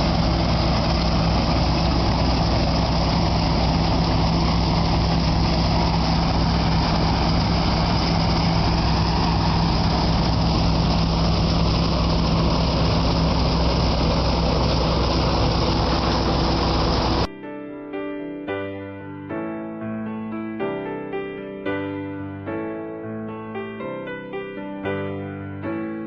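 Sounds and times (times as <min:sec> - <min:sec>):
combine harvester running: 0:00.0 - 0:17.3.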